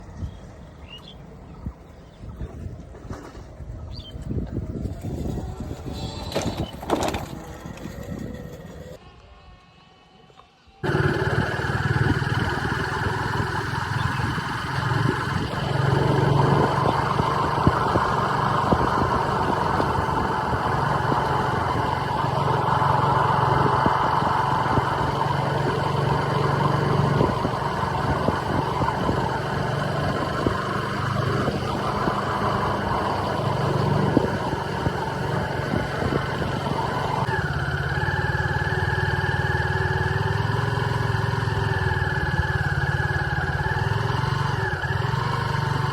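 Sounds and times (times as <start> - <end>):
vehicle engine running: 10.8 - 45.9.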